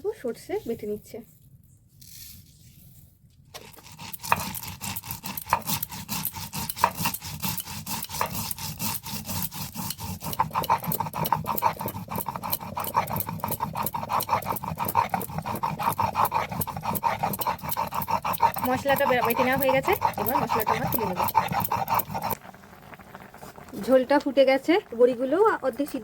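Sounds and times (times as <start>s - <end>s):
stone grinding slab rasping: 3.6s - 22.4s.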